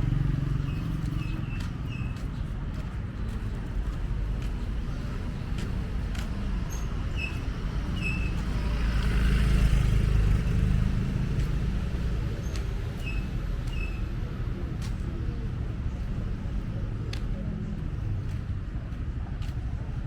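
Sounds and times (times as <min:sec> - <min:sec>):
street background noise: 0:00.0 - 0:20.0
vehicle passing by: 0:07.3 - 0:13.0.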